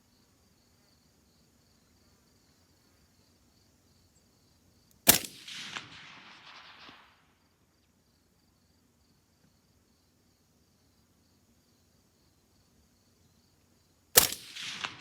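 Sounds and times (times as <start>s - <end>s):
crickets chirping: 0.0s - 15.0s
suppressed rifle shot echoing: 5.1s - 7.4s, 14.2s - 15.0s.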